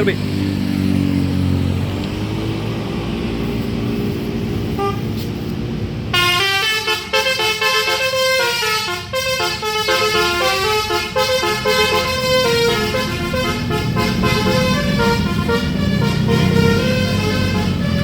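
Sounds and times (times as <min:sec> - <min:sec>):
bus engine running: 0:00.0 - 0:18.0
musical bus horn melody: 0:04.7 - 0:05.2, 0:06.1 - 0:18.0.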